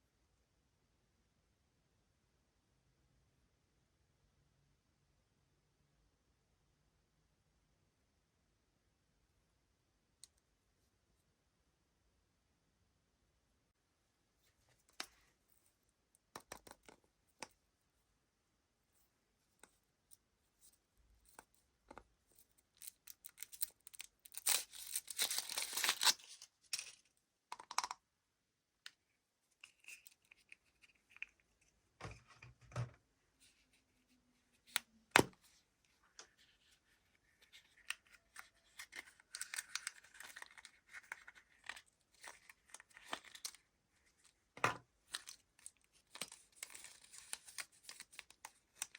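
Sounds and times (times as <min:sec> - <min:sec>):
foil wrapper crinkling: 0:22.8 - 0:26.4.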